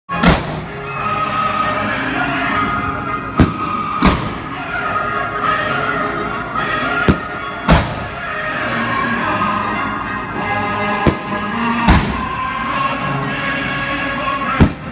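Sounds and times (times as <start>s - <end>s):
music playing: 0.1s - 14.9s
fireworks bangs: 0.2s - 0.8s, 3.3s - 4.6s, 7.1s - 8.3s, 11.0s - 12.5s, 14.6s - 14.9s.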